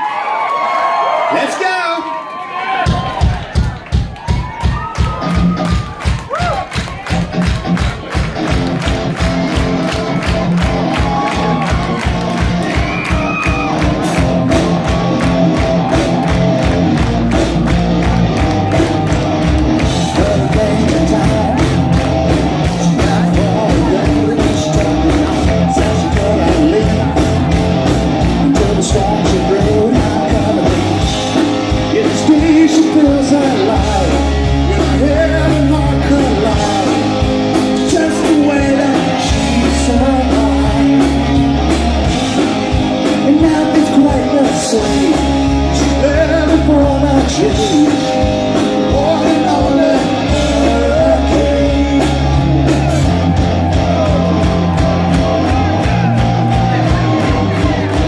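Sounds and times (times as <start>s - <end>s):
bass: 2.7s - 58.0s
drum kit beat: 2.8s - 58.0s
electric guitars: 3.2s - 58.0s
lead vocal: 19.6s - 58.0s.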